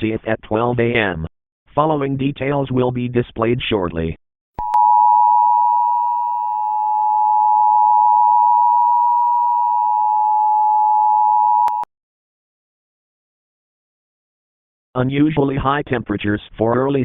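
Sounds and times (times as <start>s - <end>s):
two-tone alert signal: 4.6s - 11.9s.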